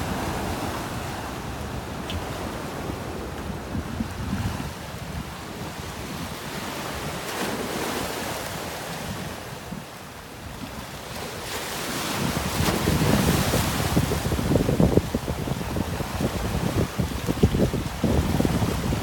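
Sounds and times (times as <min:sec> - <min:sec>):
sea waves washing in: 0:00.0 - 0:19.0
wind noise on microphone: 0:00.0 - 0:19.0.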